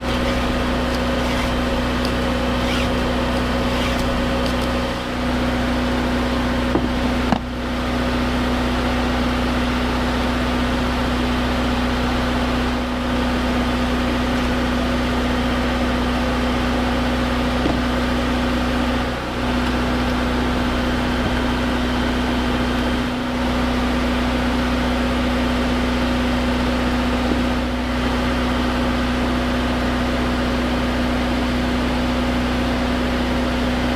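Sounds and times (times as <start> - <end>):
machine humming: 0.0 - 6.8.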